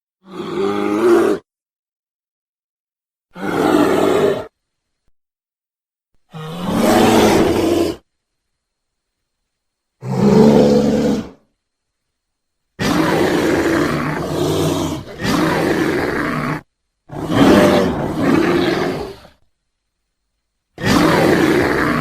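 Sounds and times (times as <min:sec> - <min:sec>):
bear roaring: 0:00.2 - 0:01.4, 0:03.3 - 0:04.5, 0:06.3 - 0:08.0, 0:10.0 - 0:11.4, 0:12.8 - 0:19.4, 0:20.8 - 0:22.0.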